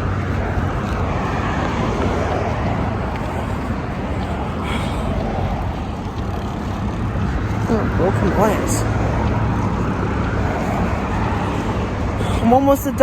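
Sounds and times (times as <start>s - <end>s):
car road noise rumble: 0.0s - 13.0s.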